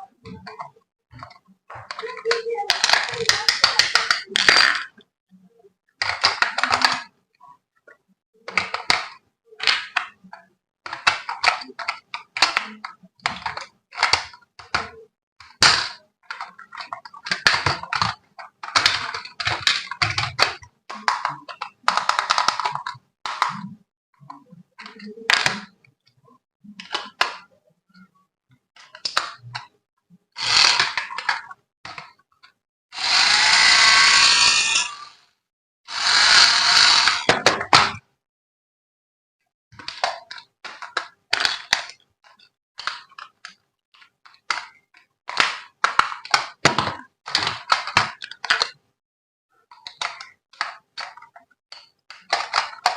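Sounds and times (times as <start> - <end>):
plastic crackles and clicks: 0.2 - 5.0, 6.0 - 7.1, 7.8 - 29.7, 39.7 - 48.8, 49.6 - 52.9.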